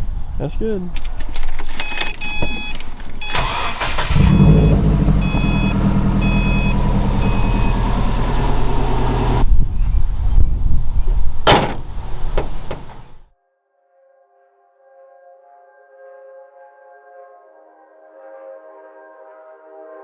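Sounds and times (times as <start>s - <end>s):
car engine starting and idling: 1.0s - 9.5s, 10.8s - 13.2s
dashboard warning chime beeping: 1.8s - 9.4s, 11.5s - 13.2s.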